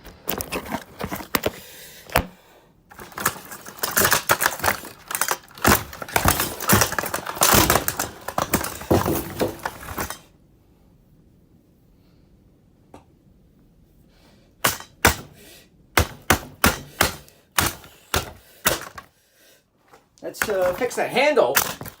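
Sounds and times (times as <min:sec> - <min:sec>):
hard plastic clattering and cracking: 0:00.0 - 0:10.3, 0:14.6 - 0:15.4, 0:16.0 - 0:19.1, 0:19.9 - 0:22.0.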